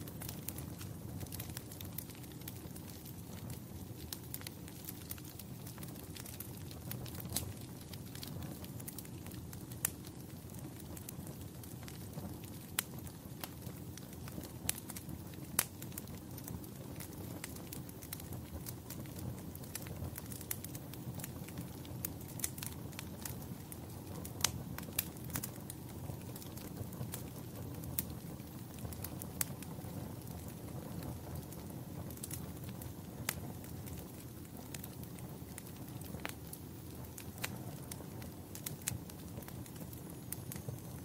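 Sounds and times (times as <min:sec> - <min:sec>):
fire crackling and popping: 0:00.0 - 0:41.0.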